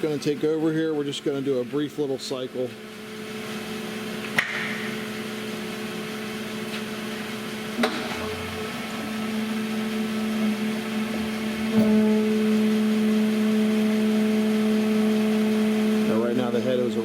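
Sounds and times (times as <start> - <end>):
grinder machine humming: 0.0 - 17.0
sharp click: 4.4 - 4.9.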